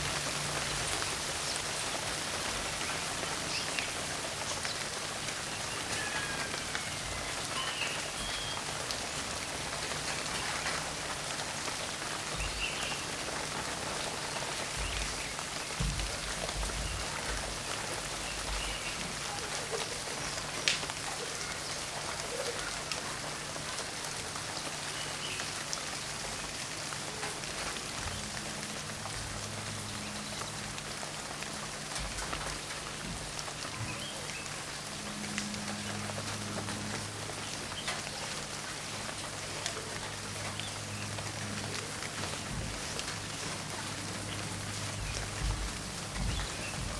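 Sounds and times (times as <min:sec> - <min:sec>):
raindrops ticking on a surface: 0:00.0 - 0:46.9
steady rainfall: 0:00.0 - 0:46.9.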